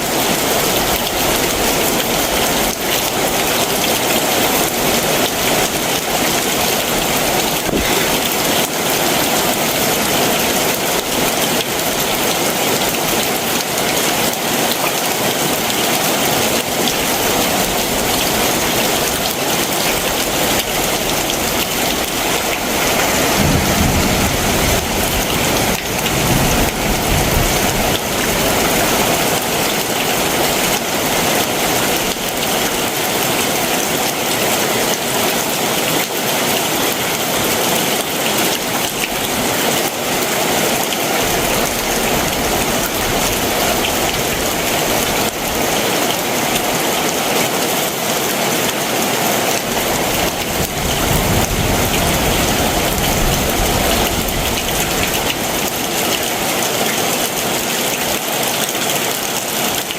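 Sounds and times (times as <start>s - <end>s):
heavy rain hissing: 0.0s - 13.5s, 16.3s - 35.8s.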